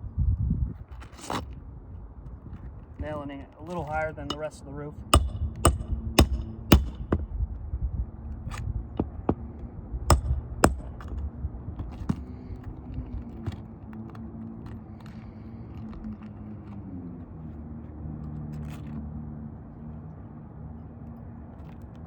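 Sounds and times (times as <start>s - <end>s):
hammer striking nails: 4.3s - 4.5s, 5.1s - 7.3s, 9.0s - 11.2s.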